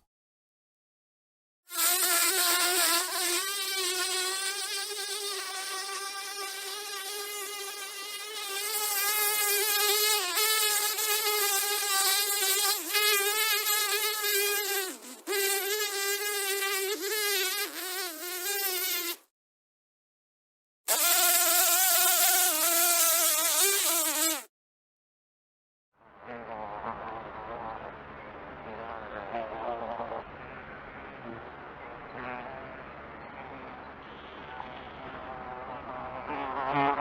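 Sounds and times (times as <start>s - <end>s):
fly buzzing: 1.7s - 19.2s, 20.9s - 24.5s, 26.2s - 27.9s, 31.2s - 37.0s.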